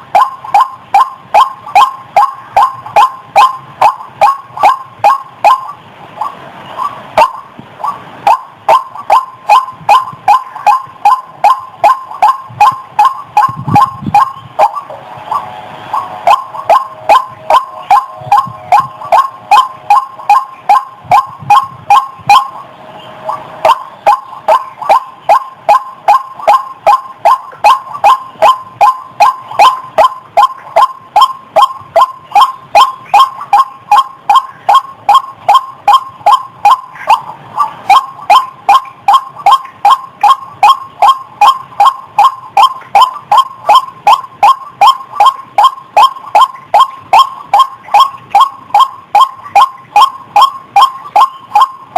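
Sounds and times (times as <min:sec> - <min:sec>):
waterhen calling: 0:00.0 - 0:51.9.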